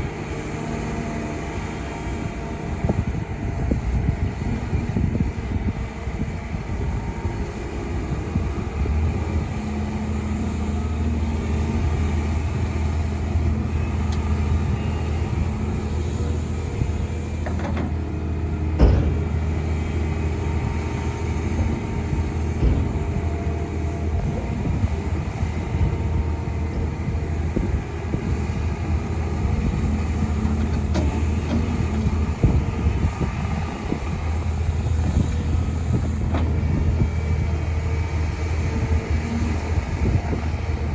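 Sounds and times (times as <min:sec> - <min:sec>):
diesel engines running: 0:00.0 - 0:40.9
small knocks: 0:17.4 - 0:18.0, 0:18.8 - 0:19.7.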